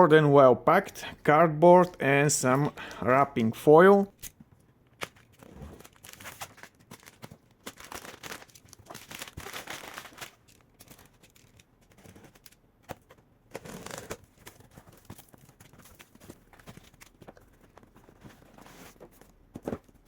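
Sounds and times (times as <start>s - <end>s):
packaging crinkling and tearing: 4.2s - 19.0s
plastic foil rustling: 5.0s - 13.2s.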